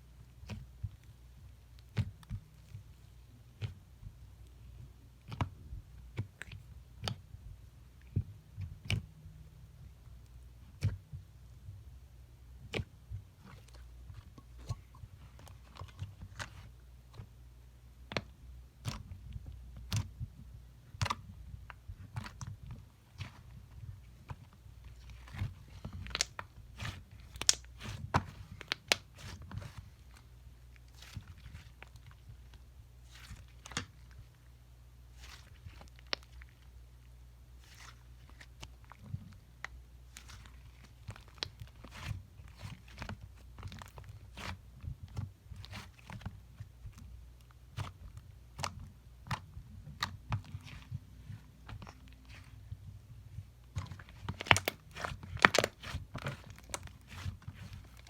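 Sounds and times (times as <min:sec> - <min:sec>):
slime crunching and crackling: 0:20.8 - 0:34.4, 0:35.1 - 0:36.7, 0:37.6 - 0:58.0.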